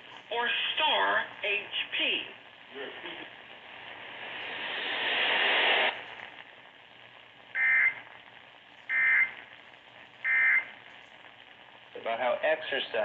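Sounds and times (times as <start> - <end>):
radio hiss: 0.0 - 13.0
buzzy warbling data tone: 7.6 - 8.0, 10.2 - 10.7.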